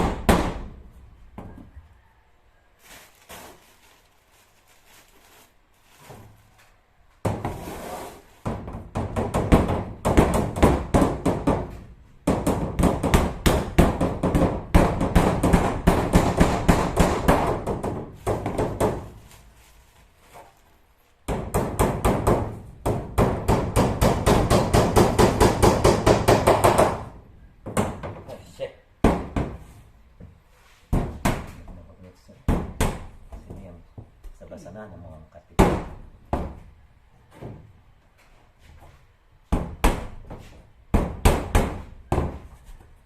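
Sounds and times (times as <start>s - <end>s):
rapid hammer strikes: 8.5s - 19.0s, 21.3s - 27.1s.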